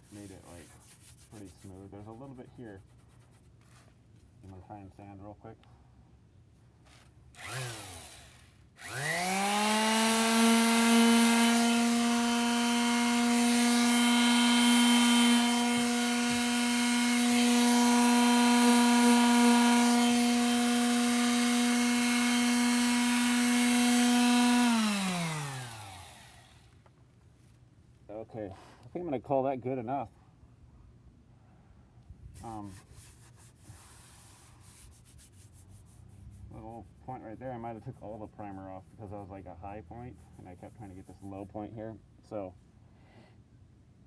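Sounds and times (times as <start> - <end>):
sandpaper rubbing hiss: 0.0 - 3.9, 32.4 - 39.3
electric sander running: 7.4 - 26.7.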